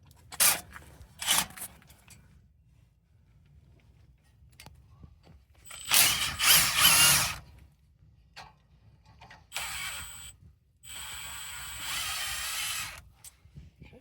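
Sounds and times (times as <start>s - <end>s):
impact wrench running: 5.7s - 7.4s, 9.5s - 10.3s, 10.9s - 13.0s.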